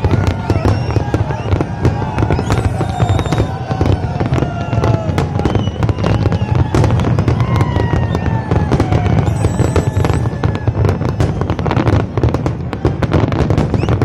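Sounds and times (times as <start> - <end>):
fireworks bangs and crackles: 0.0 - 14.0
fireworks whistles falling in pitch: 0.0 - 14.0.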